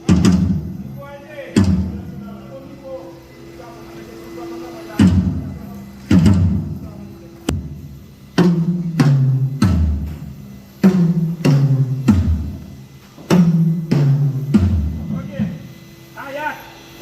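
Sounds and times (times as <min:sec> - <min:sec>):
booming drum hits: 0:00.0 - 0:01.0, 0:01.6 - 0:02.3, 0:05.0 - 0:06.8, 0:07.5 - 0:15.6.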